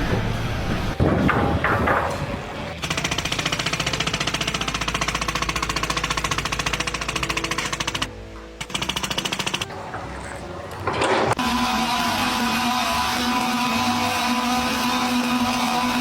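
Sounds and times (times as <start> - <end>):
rapid mechanical hammering: 0.0 - 9.8.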